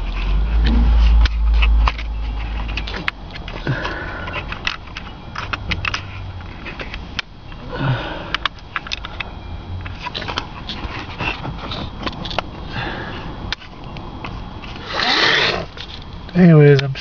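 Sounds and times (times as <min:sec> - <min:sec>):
low rumble: 0:00.0 - 0:06.7
clicks of plastic and metal parts: 0:00.1 - 0:07.3, 0:08.3 - 0:12.5.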